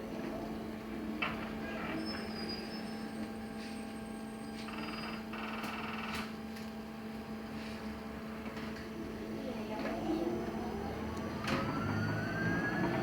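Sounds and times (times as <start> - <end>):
electric bus drive hum: 0.0 - 13.0.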